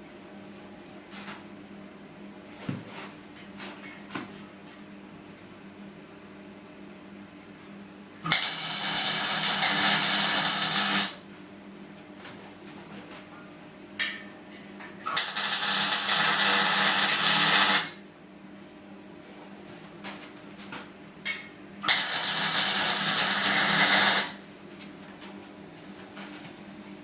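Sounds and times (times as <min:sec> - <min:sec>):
arc welding crackle: 0:08.2 - 0:11.2, 0:15.1 - 0:18.0, 0:21.8 - 0:24.4.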